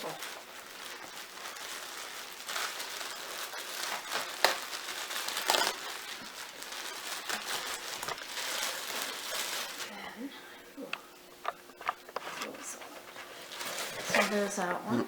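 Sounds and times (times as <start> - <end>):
sharp crackles: 0.0 - 10.2
packaging crinkling and rustling: 0.0 - 10.3, 11.1 - 14.8.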